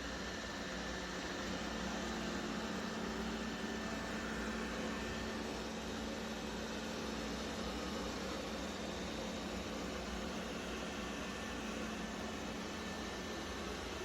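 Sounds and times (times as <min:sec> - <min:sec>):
robot vacuum running: 0:01.3 - 0:06.3.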